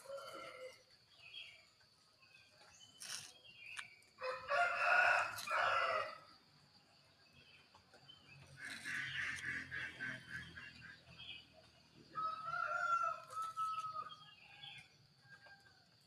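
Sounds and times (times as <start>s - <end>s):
rooster crowing: 0.0s - 0.8s, 4.2s - 6.3s, 12.1s - 14.3s
chicken calls: 8.4s - 15.6s.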